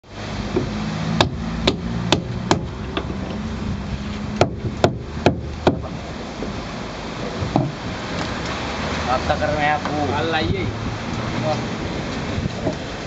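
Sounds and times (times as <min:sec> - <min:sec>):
sharp hammer strikes: 0:01.2 - 0:02.7.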